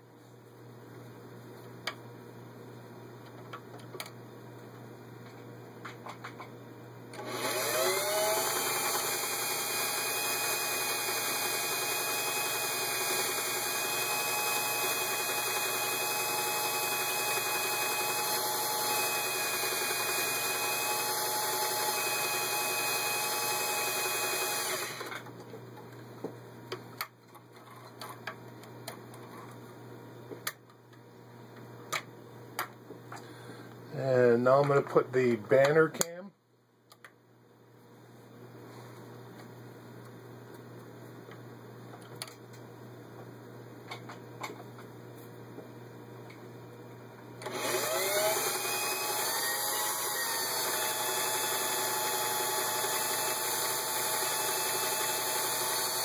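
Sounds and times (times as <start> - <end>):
sewing machine motor whine: 7.2 - 25.2, 47.4 - 56.0.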